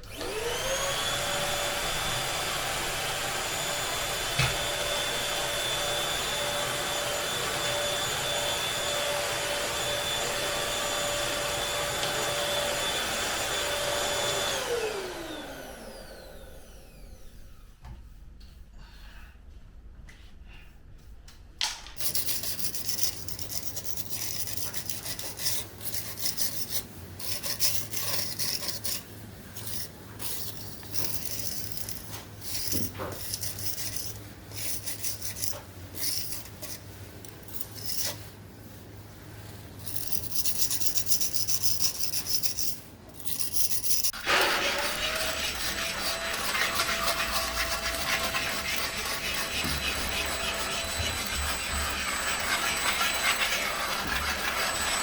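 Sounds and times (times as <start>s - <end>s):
electric motor whining: 0.0s - 17.3s, 44.2s - 55.0s
scrubbing strokes by hand: 22.0s - 55.0s.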